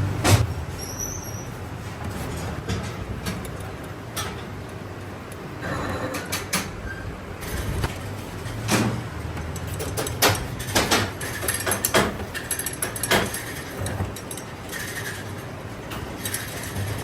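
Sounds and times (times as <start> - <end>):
metal knocks and clanks: 7.6 - 15.0.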